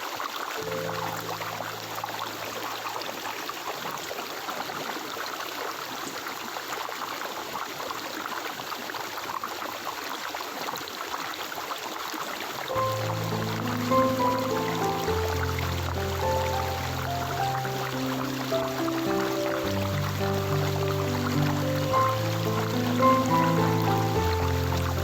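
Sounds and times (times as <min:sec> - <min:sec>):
stream water babbling: 0:00.0 - 0:25.0.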